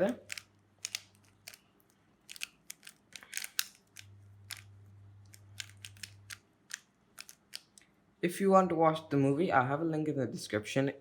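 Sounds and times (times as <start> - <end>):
puzzle cube layers clicking: 0.0 - 1.6, 2.2 - 7.8.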